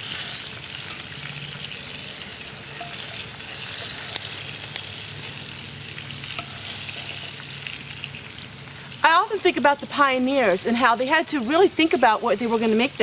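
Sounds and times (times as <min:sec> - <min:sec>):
bacon sizzling in a pan: 0:00.0 - 0:13.0.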